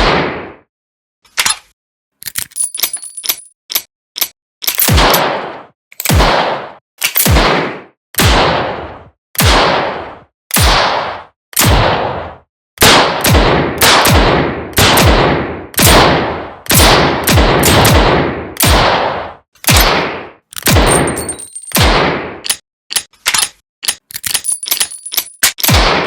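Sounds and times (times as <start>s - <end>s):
small metallic clicks and clinks: 2.2s - 4.9s, 20.5s - 21.8s, 22.4s - 25.7s
revolver gunshots echoing: 4.8s - 8.8s, 9.4s - 10.0s, 10.6s - 12.2s, 12.8s - 22.4s, 25.7s - 26.0s.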